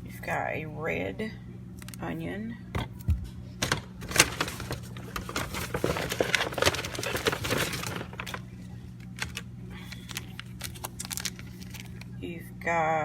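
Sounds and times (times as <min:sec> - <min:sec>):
food packaging crinkling: 0:03.6 - 0:12.2.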